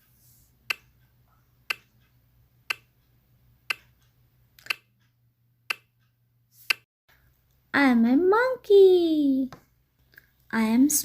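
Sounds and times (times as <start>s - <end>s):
clock ticking: 0.6s - 6.8s.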